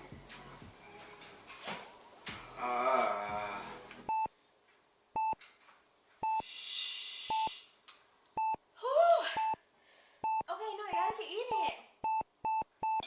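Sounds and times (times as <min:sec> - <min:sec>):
breathy hiss: 0:01.8 - 0:04.1, 0:06.4 - 0:07.8
wavering vocal sound: 0:02.5 - 0:04.0
short electronic beeps: 0:04.1 - 0:04.3, 0:05.2 - 0:05.4, 0:06.2 - 0:06.4, 0:07.3 - 0:07.5, 0:08.4 - 0:08.6, 0:10.2 - 0:13.0.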